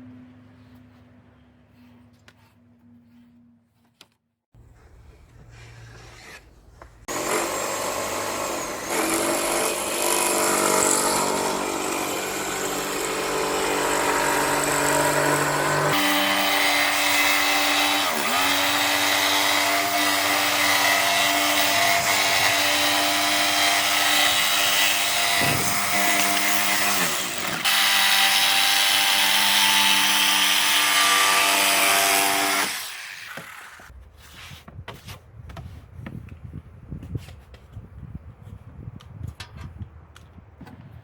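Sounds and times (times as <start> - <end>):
power tool motor whining: 7.1 - 33.9.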